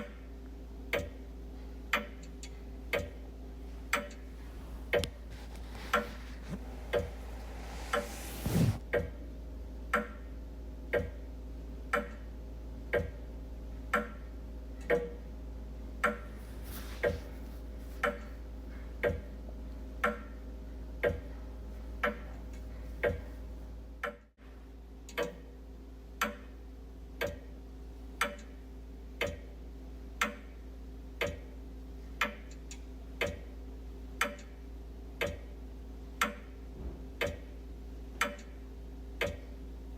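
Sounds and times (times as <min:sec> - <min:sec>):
wall clock ticking: 0:00.9 - 0:06.1, 0:09.9 - 0:10.3, 0:10.9 - 0:13.3, 0:13.9 - 0:15.3, 0:16.0 - 0:19.4, 0:20.0 - 0:20.4, 0:21.0 - 0:21.4, 0:22.0 - 0:22.4, 0:23.0 - 0:23.4, 0:25.1 - 0:25.5, 0:26.2 - 0:27.6, 0:28.2 - 0:29.6, 0:30.2 - 0:30.6, 0:31.2 - 0:33.6, 0:34.2 - 0:36.6, 0:37.2 - 0:39.6
low hum: 0:03.6 - 0:08.8
brief louder noise: 0:05.4 - 0:08.8.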